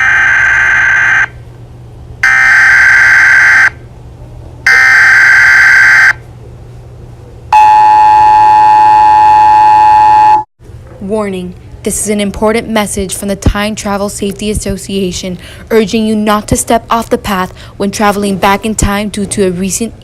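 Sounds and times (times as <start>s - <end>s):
buzzing alert blasts: 0.0s - 1.4s, 2.2s - 3.8s, 4.7s - 6.2s
two-tone alarm: 0.0s - 1.4s, 2.2s - 3.8s, 4.7s - 6.2s, 7.6s - 10.5s.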